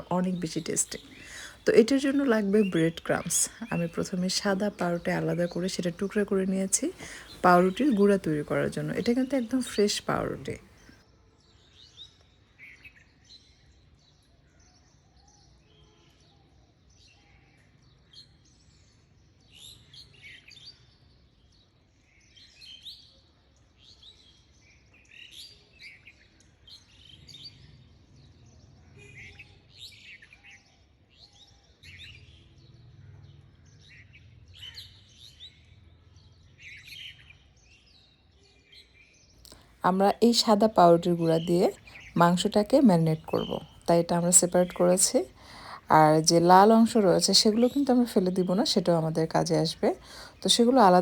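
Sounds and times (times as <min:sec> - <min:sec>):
faint birds chirping: 0:00.0 - 0:11.0, 0:39.4 - 0:51.0.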